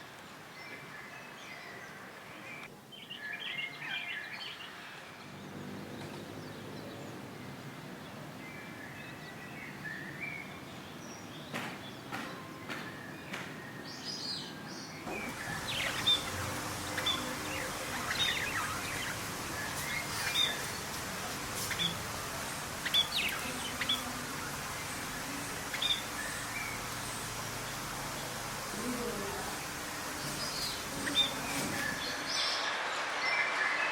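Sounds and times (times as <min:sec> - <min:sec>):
background hiss: 0:00.0 - 0:33.9
songbirds chirping: 0:00.0 - 0:33.9.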